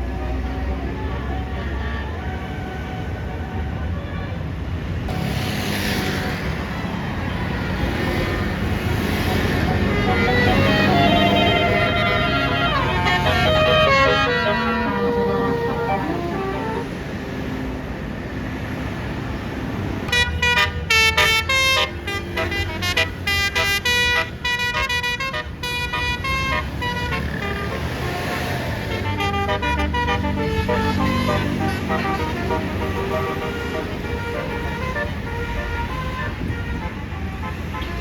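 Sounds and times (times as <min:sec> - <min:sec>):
bus engine rumble: 0:00.0 - 0:38.0
low traffic noise: 0:00.0 - 0:38.0
bus horn playing a melody: 0:09.0 - 0:17.4, 0:20.1 - 0:38.0.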